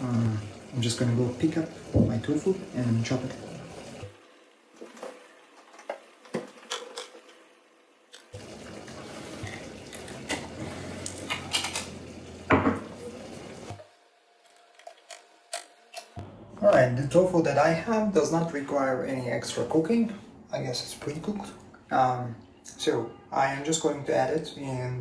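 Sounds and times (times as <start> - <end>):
kitchen tap running: 0.0 - 7.4, 8.1 - 13.9.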